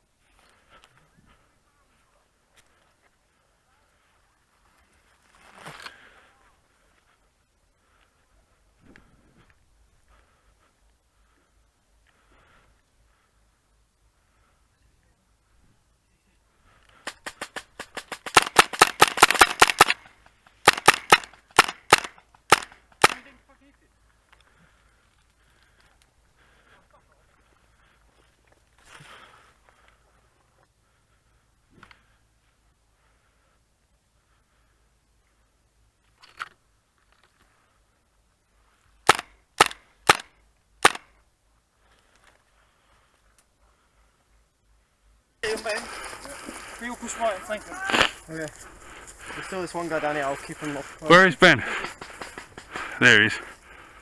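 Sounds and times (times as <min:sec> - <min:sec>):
airsoft gun firing: 0:17.0 - 0:23.3, 0:39.1 - 0:41.1.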